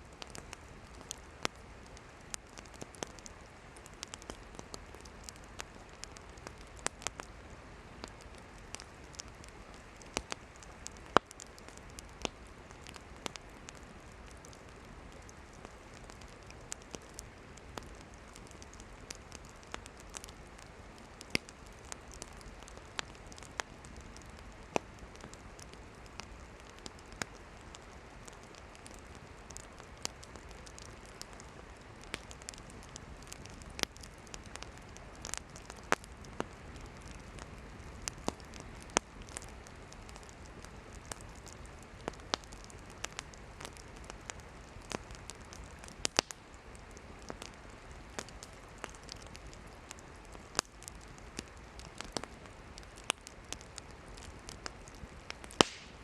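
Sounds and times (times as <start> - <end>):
campfire hissing: 0.0 - 56.0
firewood crackling and popping: 0.0 - 56.0.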